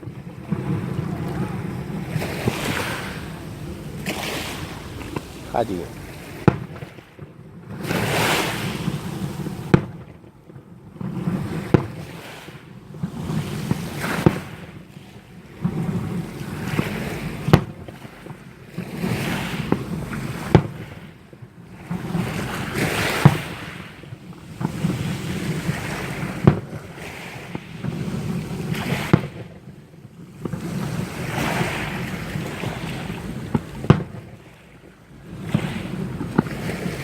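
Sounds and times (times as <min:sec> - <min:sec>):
fireworks bangs: 0:00.0 - 0:14.8, 0:19.6 - 0:21.0, 0:21.8 - 0:37.0.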